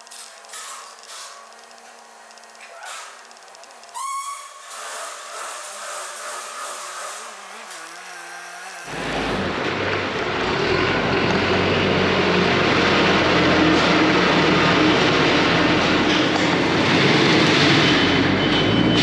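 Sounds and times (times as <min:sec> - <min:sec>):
heavy vehicle engine running: 0:08.8 - 0:19.0.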